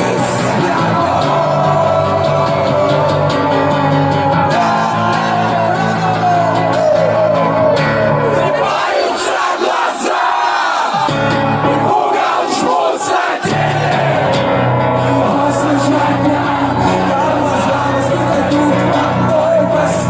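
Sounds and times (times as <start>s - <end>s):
bass and guitar: 0.0s - 8.7s, 10.9s - 12.0s, 13.4s - 20.0s
man singing and shouting: 0.0s - 9.3s, 14.9s - 20.0s.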